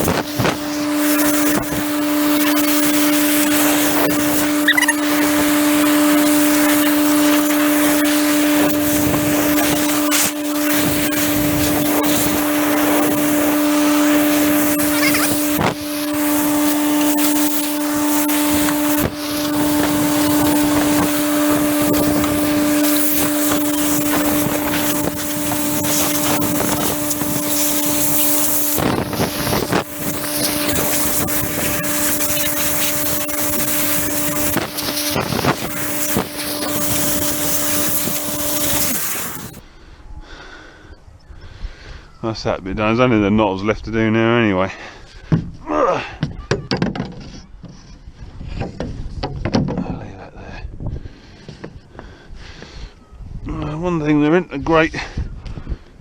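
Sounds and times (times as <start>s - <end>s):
compressed air blow gun hissing: 0.0s - 39.6s
steady hum: 0.0s - 41.1s.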